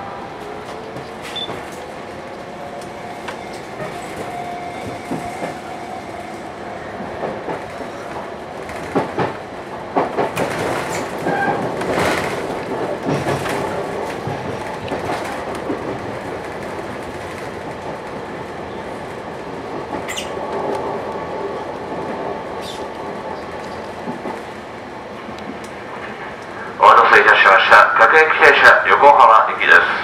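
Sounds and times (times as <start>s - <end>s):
train running noise: 0.0s - 30.0s
train wheels clacking over rail joints: 8.6s - 18.0s.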